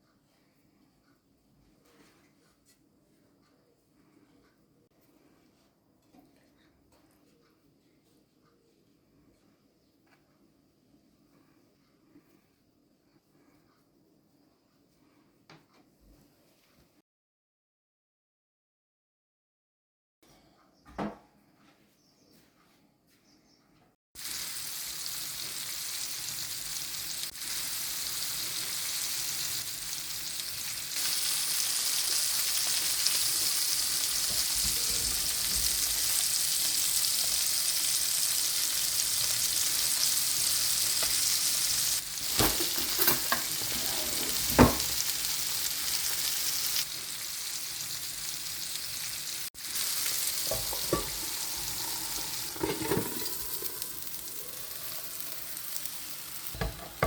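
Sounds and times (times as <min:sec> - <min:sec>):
fish sizzling in oil: 0:24.2 - 0:57.0.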